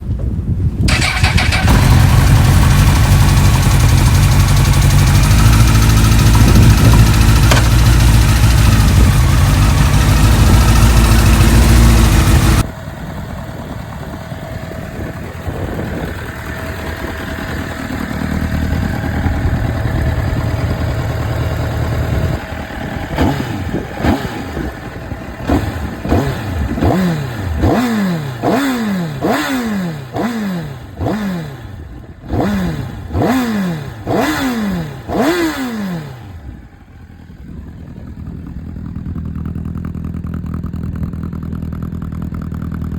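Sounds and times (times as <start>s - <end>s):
engine running: 0.9s - 42.9s
engine revving in blips: 23.1s - 24.7s, 25.4s - 36.5s.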